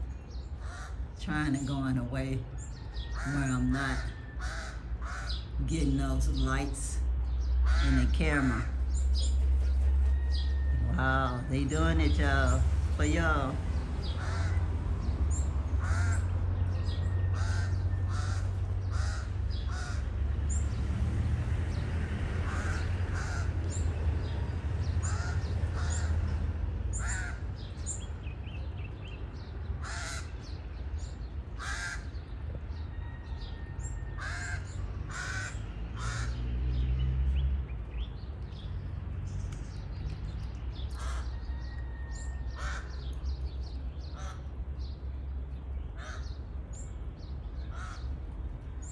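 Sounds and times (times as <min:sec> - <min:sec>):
crows cawing: 0:00.6 - 0:01.1, 0:02.9 - 0:05.5, 0:07.6 - 0:08.7, 0:14.0 - 0:14.7, 0:15.8 - 0:16.3, 0:17.0 - 0:20.1, 0:22.4 - 0:23.8, 0:25.0 - 0:27.7, 0:29.8 - 0:30.5, 0:31.6 - 0:32.3, 0:33.2 - 0:36.4, 0:40.9 - 0:43.2, 0:44.0 - 0:44.5, 0:46.0 - 0:46.4, 0:47.7 - 0:48.1.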